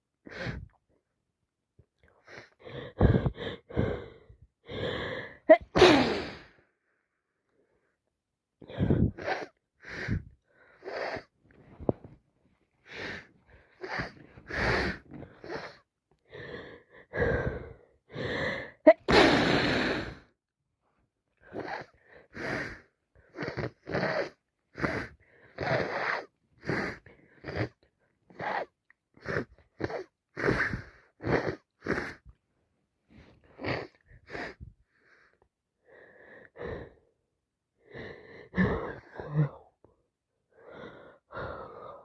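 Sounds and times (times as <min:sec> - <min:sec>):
wheezy gasping breaths: 0:00.2 - 0:00.8, 0:02.0 - 0:06.7, 0:08.6 - 0:20.4, 0:21.4 - 0:32.4, 0:33.1 - 0:37.2, 0:37.8 - 0:39.9, 0:40.5 - 0:42.0
person sneezing loudly: 0:05.5 - 0:06.5, 0:18.9 - 0:20.0.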